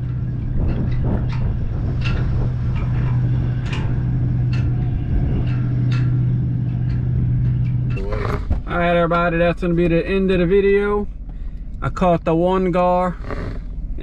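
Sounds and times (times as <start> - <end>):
motor humming: 0.0 - 10.6.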